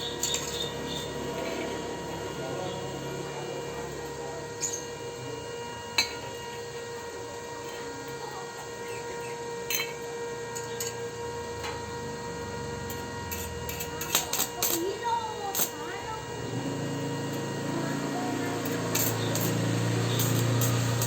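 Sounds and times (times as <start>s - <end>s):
welding machine humming: 0.0s - 21.0s.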